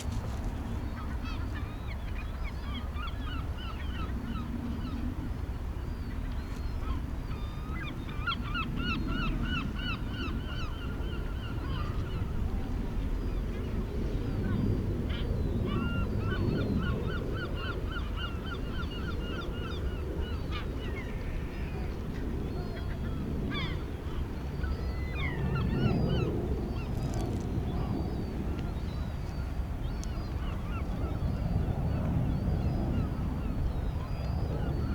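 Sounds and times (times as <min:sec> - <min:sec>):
low rumble of sea: 0:00.0 - 0:34.9.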